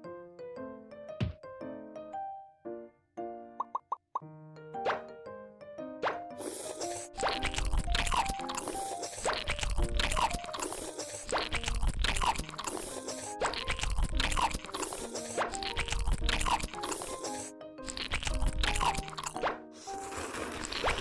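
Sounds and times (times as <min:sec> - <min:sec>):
bouncy background music: 0:00.1 - 0:02.3, 0:03.3 - 0:21.0
crunchy biting and chewing: 0:06.4 - 0:21.0.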